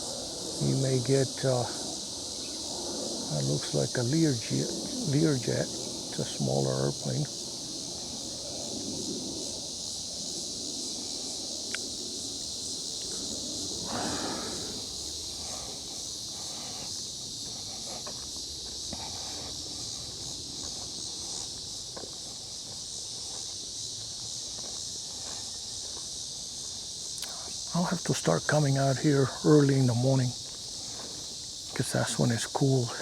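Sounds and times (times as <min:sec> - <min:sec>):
high-pitched insect chorus: 0:00.0 - 0:33.0
footsteps on trail: 0:12.9 - 0:27.6, 0:29.7 - 0:33.0.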